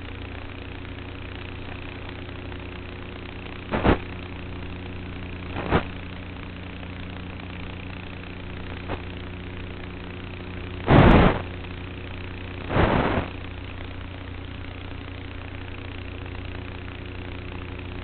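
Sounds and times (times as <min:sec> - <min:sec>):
model airplane motor humming: 0:00.0 - 0:18.0
short loud rushes of noise: 0:03.7 - 0:04.0, 0:10.9 - 0:11.5, 0:12.7 - 0:13.4.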